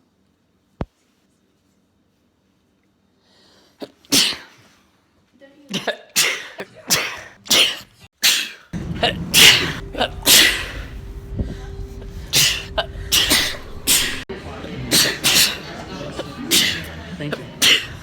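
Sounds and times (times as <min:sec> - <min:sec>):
man sneezing: 0:03.8 - 0:04.7, 0:05.8 - 0:08.7, 0:12.3 - 0:14.2, 0:14.9 - 0:15.7
steady low hum: 0:08.8 - 0:16.3.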